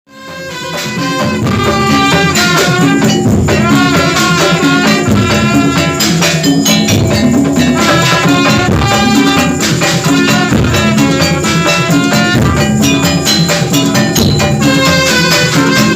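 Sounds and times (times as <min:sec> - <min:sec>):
music with steady beat: 0:00.1 - 0:15.9.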